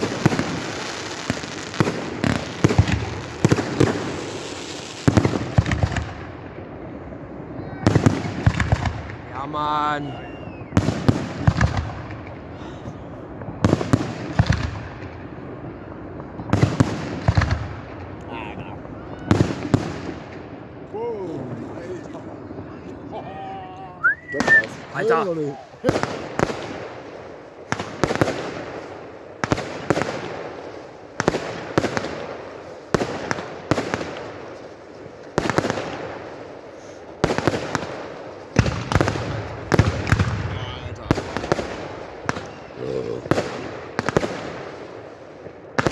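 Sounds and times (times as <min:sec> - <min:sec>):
fireworks hiss: 0:00.0 - 0:05.7, 0:27.6 - 0:28.8
fireworks bangs: 0:00.0 - 0:23.1, 0:24.0 - 0:45.9.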